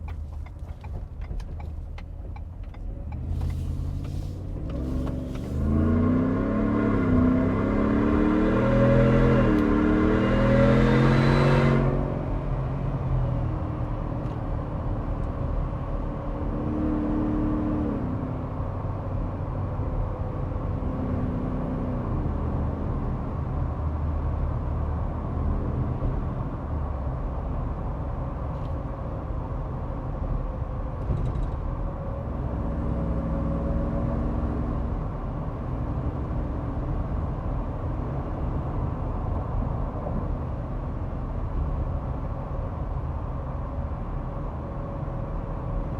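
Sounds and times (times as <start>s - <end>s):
tyre and road noise: 0.0s - 15.8s.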